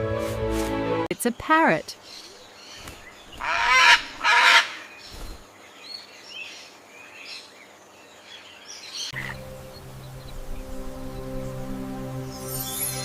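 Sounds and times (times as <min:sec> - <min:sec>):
parrot squawking: 0:03.4 - 0:04.8.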